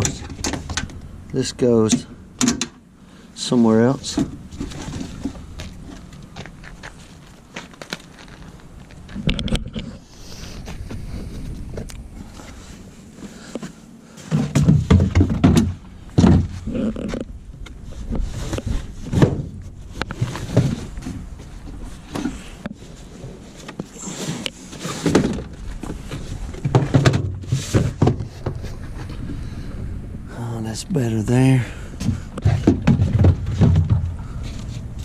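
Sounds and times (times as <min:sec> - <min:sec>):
tools knocking and rattling in toolbox: 0:14.3 - 0:16.6, 0:26.6 - 0:28.6, 0:32.0 - 0:34.1.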